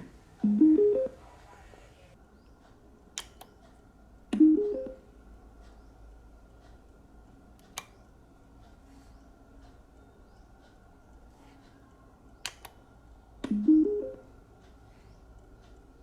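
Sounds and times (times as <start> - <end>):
sharp clicks: 3.2 - 3.8, 7.6 - 8.1, 12.3 - 13.7
rising stepped beep tones: 13.5 - 14.3.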